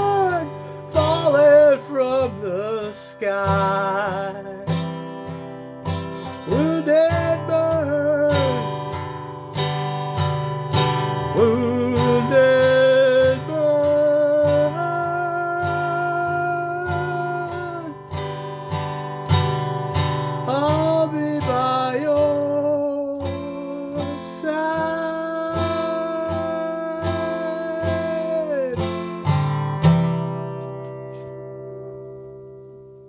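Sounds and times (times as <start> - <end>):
acoustic guitar strumming: 0.0 - 33.0.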